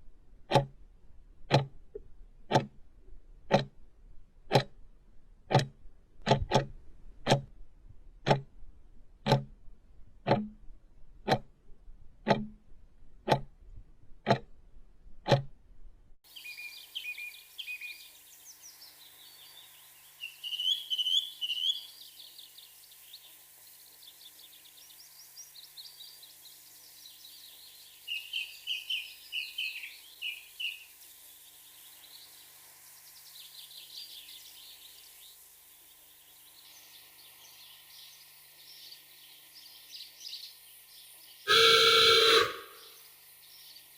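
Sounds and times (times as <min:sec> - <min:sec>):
clock ticking: 0:00.4 - 0:00.8, 0:01.5 - 0:01.7, 0:02.5 - 0:02.8, 0:03.5 - 0:03.8, 0:04.5 - 0:04.8, 0:05.5 - 0:07.6, 0:08.2 - 0:08.6, 0:09.2 - 0:09.6, 0:10.2 - 0:10.6, 0:11.2 - 0:11.6, 0:12.2 - 0:12.6, 0:13.2 - 0:13.6, 0:14.2 - 0:14.5, 0:15.2 - 0:15.5
birds chirping and trilling: 0:16.3 - 0:43.9.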